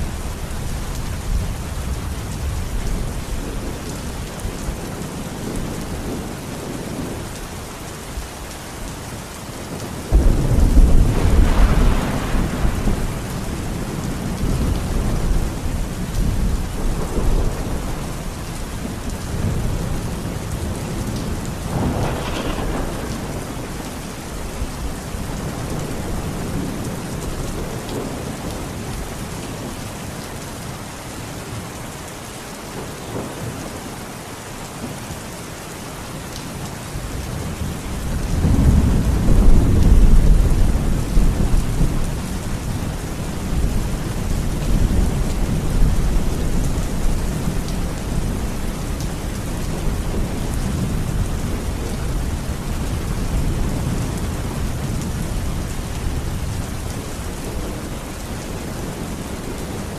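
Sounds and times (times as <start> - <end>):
heavy rain: 0.0 - 59.9
thunder clap and rumbles: 9.8 - 28.9, 37.2 - 57.8.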